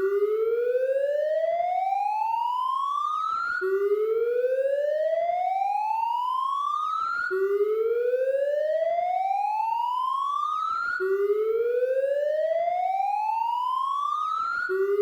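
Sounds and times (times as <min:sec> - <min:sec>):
police siren wailing: 0:05.5 - 0:15.0.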